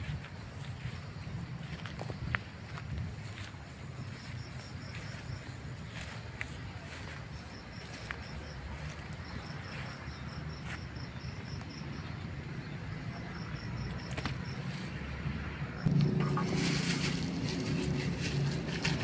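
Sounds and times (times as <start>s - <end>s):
insect chirping: 0.5s - 14.8s
low steady rumble: 15.8s - 19.0s.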